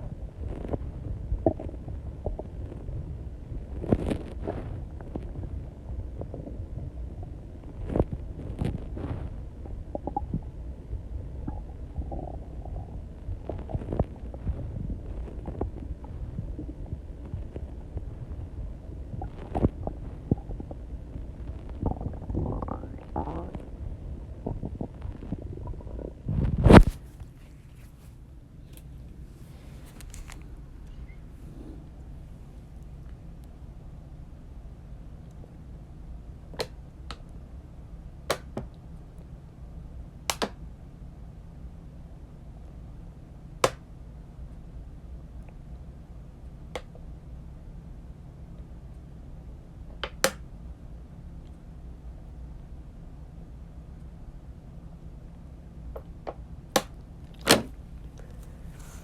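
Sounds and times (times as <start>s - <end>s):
low internal body rumble: 0.0s - 59.0s
microphone shifting on clothing: 26.2s - 32.0s, 57.3s - 59.0s
soft body pops: 26.3s - 28.1s.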